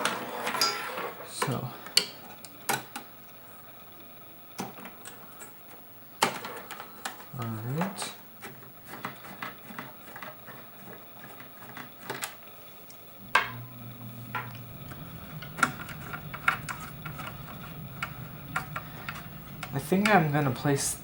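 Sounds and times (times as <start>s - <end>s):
low steady hum: 13.1s - 21.0s.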